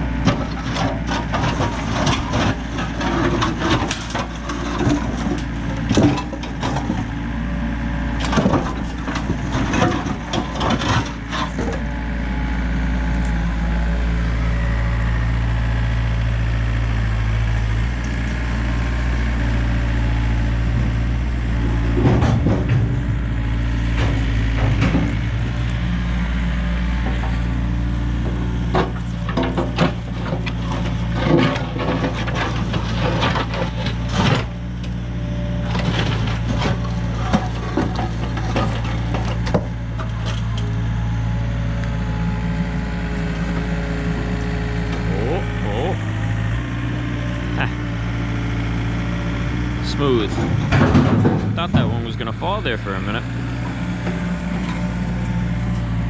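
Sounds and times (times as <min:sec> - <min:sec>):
excavator diesel engine: 0:00.0 - 0:56.0
concrete knocking in bucket: 0:35.7 - 0:40.6.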